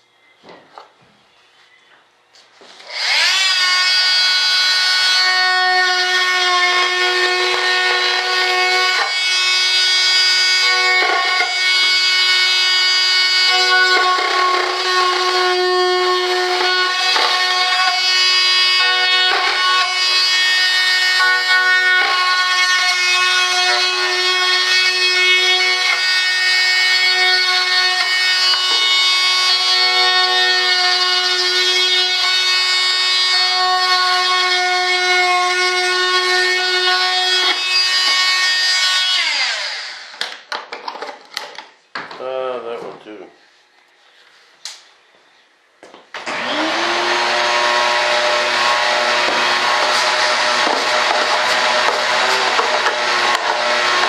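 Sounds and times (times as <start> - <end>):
power tool cutting: 2.8 - 40.3, 46.2 - 54.0
rasping hand sanding: 47.8 - 54.0.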